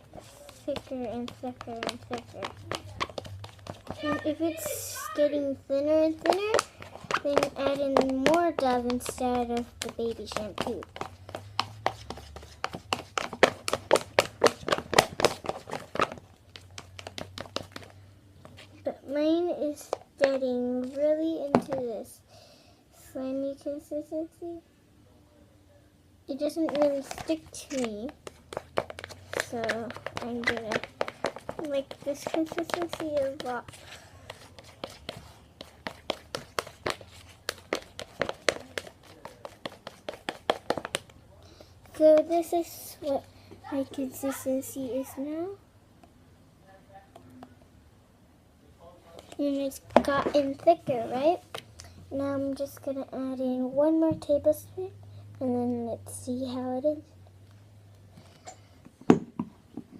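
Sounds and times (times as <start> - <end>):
slime squelching when stirred: 26.6 - 41.0.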